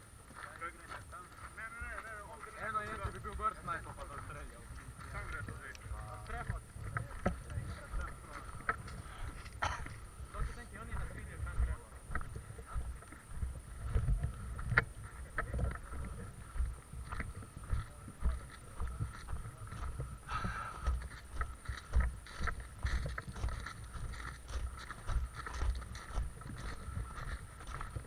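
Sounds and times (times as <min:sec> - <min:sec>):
footsteps low thumps: 0:00.0 - 0:28.0
scattered clicks: 0:05.1 - 0:09.6.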